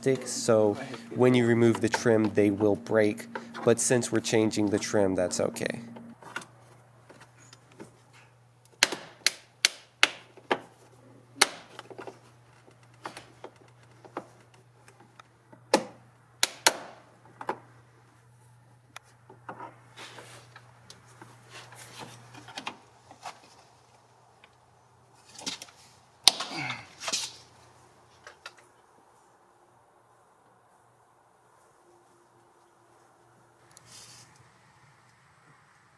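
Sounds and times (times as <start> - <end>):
faint steady hum: 0.0 - 6.2.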